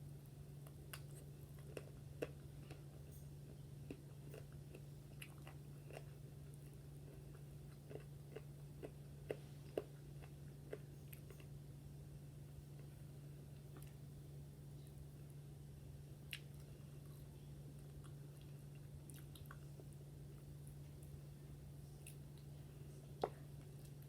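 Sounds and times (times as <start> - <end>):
steady low hum: 0.0 - 24.0
crunching and chewing: 0.6 - 11.6, 16.3 - 21.2.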